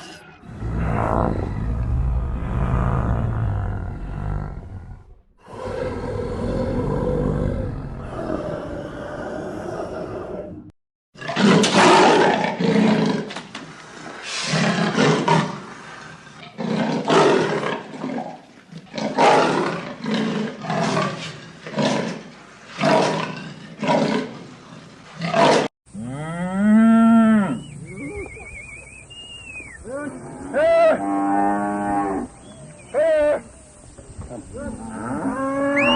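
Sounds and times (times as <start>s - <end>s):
tiger roaring: 0.4s - 10.6s
low rough growl: 0.4s - 10.7s.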